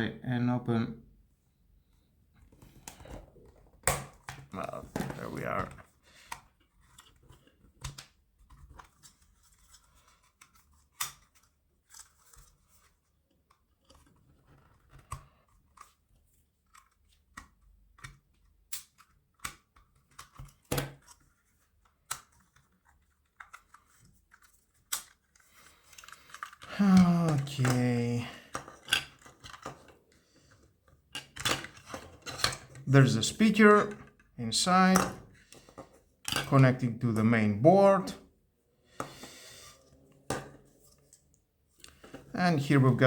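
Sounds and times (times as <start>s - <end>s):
plastic parts clicking and tapping: 2.5s - 27.8s, 28.5s - 32.9s, 34.9s - 36.5s.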